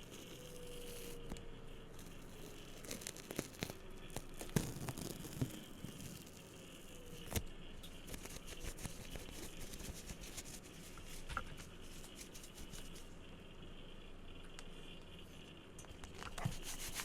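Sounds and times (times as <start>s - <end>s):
hands scratching and tapping objects: 7.1s - 13.1s, 15.9s - 17.0s.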